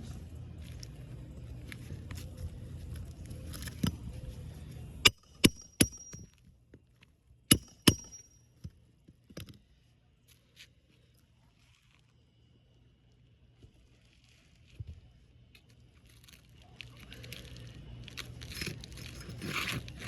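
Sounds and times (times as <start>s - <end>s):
hammer striking nail: 5.1s - 6.3s, 7.5s - 8.4s.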